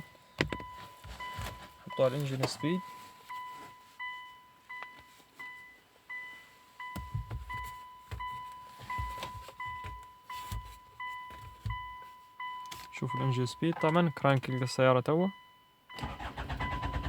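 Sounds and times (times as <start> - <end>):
engine cranking on starter: 16.0 - 17.0.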